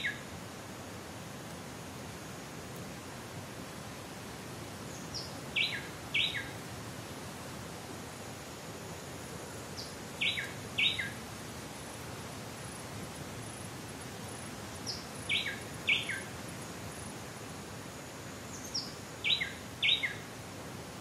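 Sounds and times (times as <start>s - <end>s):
bird calling: 0.0s - 0.2s, 5.0s - 6.6s, 9.8s - 11.2s, 14.9s - 16.3s, 18.6s - 20.2s
forest background hiss: 0.0s - 21.0s.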